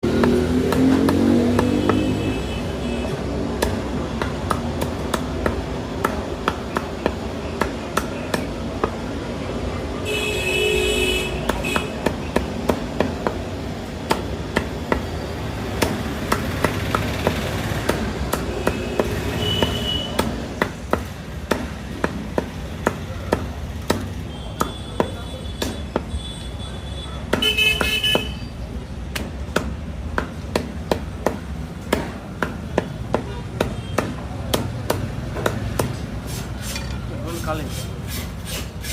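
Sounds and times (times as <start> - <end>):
cleaver chopping chicken: 0.0 - 2.2, 3.1 - 9.0, 14.0 - 26.2, 27.2 - 28.4, 29.0 - 36.7
vehicle horns honking: 1.7 - 3.2, 10.0 - 12.0, 18.4 - 20.3, 24.2 - 28.6.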